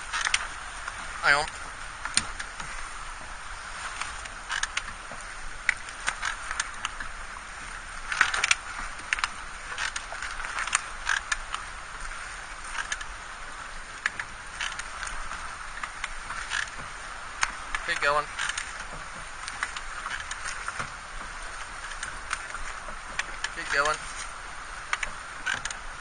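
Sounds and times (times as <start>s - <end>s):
water slapping against boat hull: 0.0s - 26.0s.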